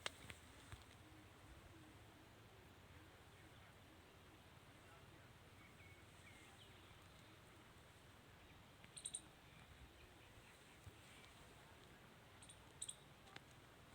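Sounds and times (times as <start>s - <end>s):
faint high chirps: 8.8s - 11.4s, 12.4s - 13.2s.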